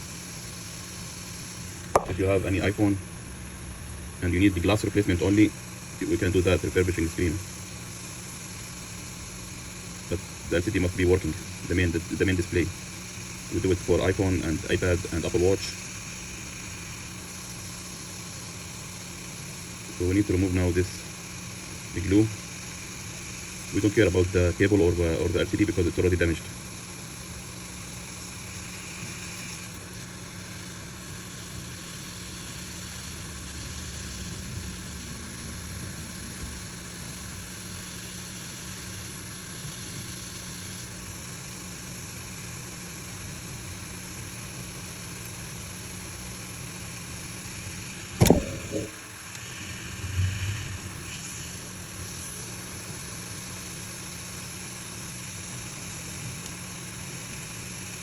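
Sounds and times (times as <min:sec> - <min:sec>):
workbench machine hum: 0:00.0 - 0:58.0
sharp click: 0:02.0 - 0:02.2, 0:48.2 - 0:50.6
low thud: 0:48.2 - 0:48.9.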